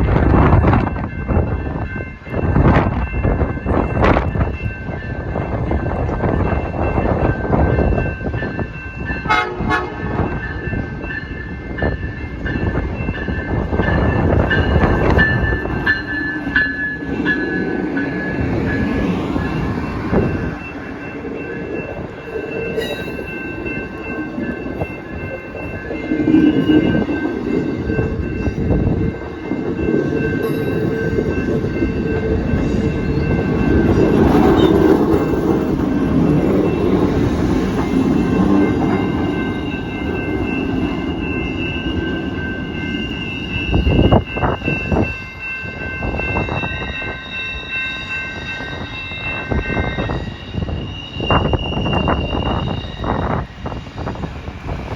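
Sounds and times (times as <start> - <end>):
rumble of train cars: 0.0 - 54.9
train horn: 9.2 - 10.3, 34.4 - 35.0.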